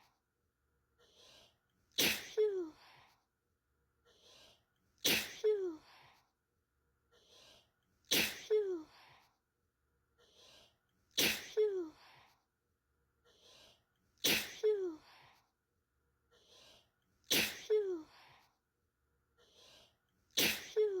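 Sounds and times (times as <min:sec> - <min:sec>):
person sneezing: 0:01.9 - 0:03.0, 0:05.0 - 0:06.0, 0:08.1 - 0:09.1, 0:11.1 - 0:12.2, 0:14.2 - 0:15.2, 0:17.3 - 0:18.3, 0:20.3 - 0:21.0.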